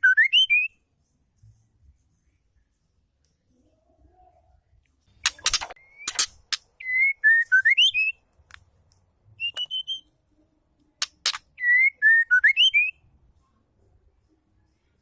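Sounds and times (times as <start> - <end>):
higher whistled bird notes: 0.0 - 0.8, 5.3 - 8.2, 9.4 - 10.1, 11.6 - 13.0
bird click calls: 5.2 - 6.7
bird whistling gliding notes: 5.3 - 8.2.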